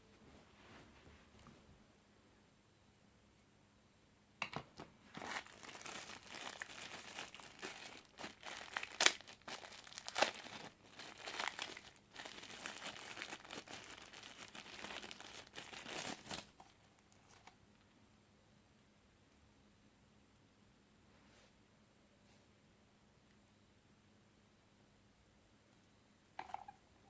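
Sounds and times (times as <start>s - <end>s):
plastic wrapping crinkling: 5.0s - 17.5s.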